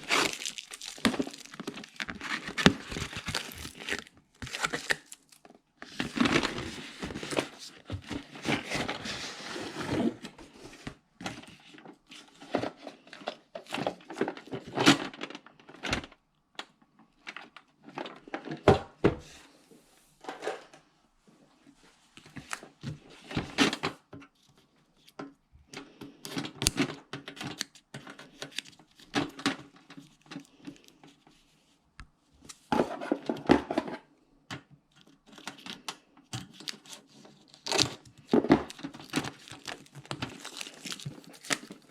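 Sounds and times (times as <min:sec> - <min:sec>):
plastic packaging crinkling and tearing: 0:00.0 - 0:10.1, 0:26.3 - 0:31.2, 0:36.4 - 0:41.9.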